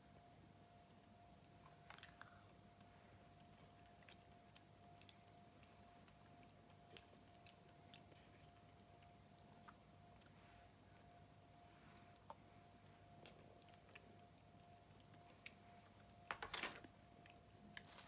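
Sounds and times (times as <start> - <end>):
faint steady hum: 0.0 - 18.0
faint chewing: 0.8 - 10.7, 11.8 - 16.3, 17.2 - 18.0.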